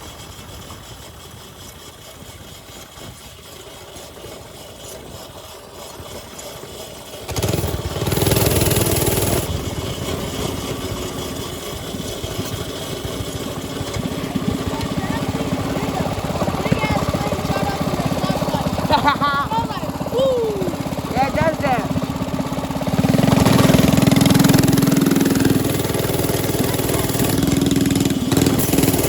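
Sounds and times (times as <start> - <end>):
mini bike engine running: 0.0 - 29.0.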